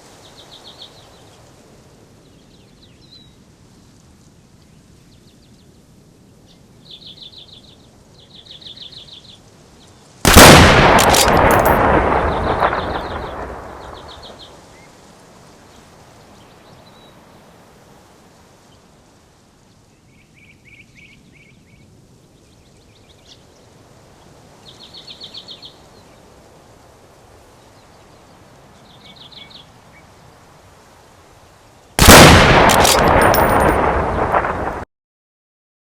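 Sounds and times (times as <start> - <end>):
faint steady hiss: 0.0 - 34.8
loud burst of noise: 10.3 - 14.4.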